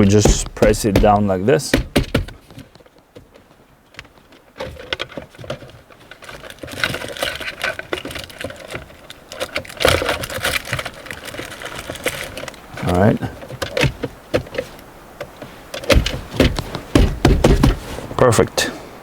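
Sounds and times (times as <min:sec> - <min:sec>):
plastic parts rattling and clicking: 0:04.6 - 0:14.7.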